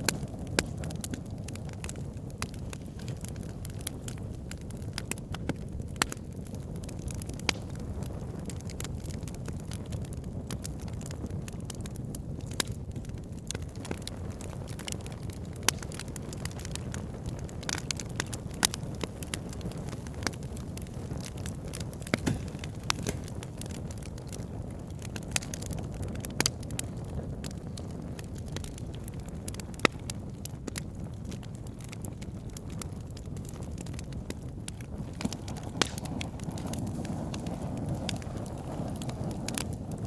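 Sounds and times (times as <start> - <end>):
campfire crackling and popping: 0.0 - 40.0
fire low rumble: 0.0 - 40.0
loud wood snaps: 19.9 - 24.4, 35.1 - 36.8.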